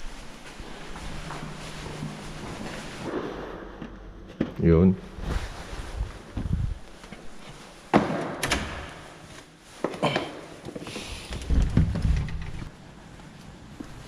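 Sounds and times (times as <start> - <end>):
thuds and knocks: 11.4 - 12.7.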